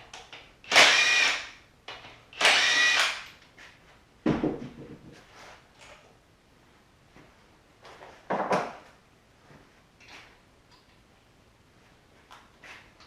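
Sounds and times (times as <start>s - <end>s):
power tool motor whining: 0.7s - 1.4s, 2.4s - 3.2s.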